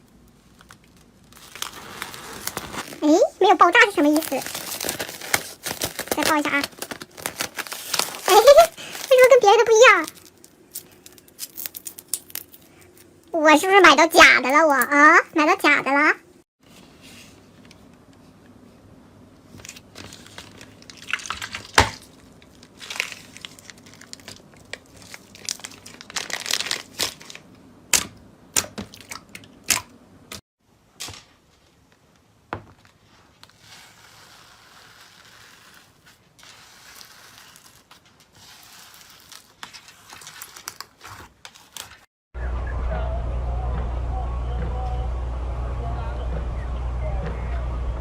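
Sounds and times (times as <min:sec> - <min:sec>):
rustling: 0:00.3 - 0:13.1
crackling from crushing in hands: 0:04.0 - 0:13.3.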